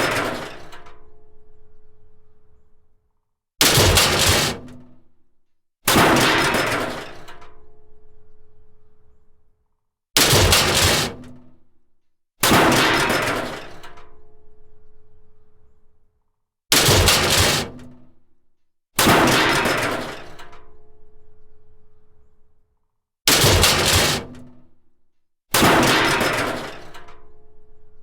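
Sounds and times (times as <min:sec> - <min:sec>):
metal crashing and clattering: 0:03.7 - 0:04.6, 0:10.2 - 0:11.2, 0:16.8 - 0:17.8, 0:19.1 - 0:20.4, 0:23.3 - 0:24.4, 0:25.6 - 0:27.0.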